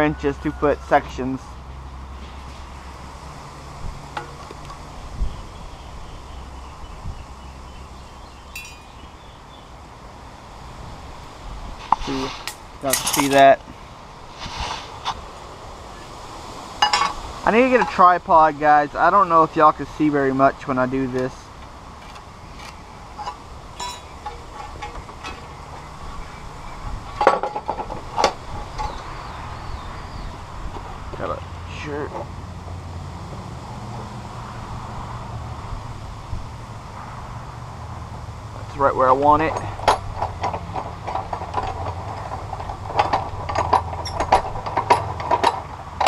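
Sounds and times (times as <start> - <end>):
wind rumbling on microphone: 1.7 - 46.0
ringing metal clanks: 4.1 - 4.7, 8.5 - 9.2, 16.8 - 17.2, 22.0 - 25.9, 41.3 - 45.7
clicks and light metal knocks: 4.1 - 4.8, 11.9 - 13.7, 21.1 - 25.9, 39.2 - 46.0
metallic clinks of angle iron: 8.5 - 9.0, 22.0 - 25.5.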